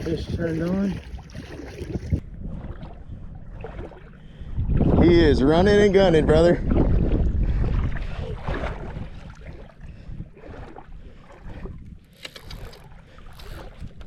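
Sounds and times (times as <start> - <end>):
wind rumbling on microphone: 0.0 - 14.0.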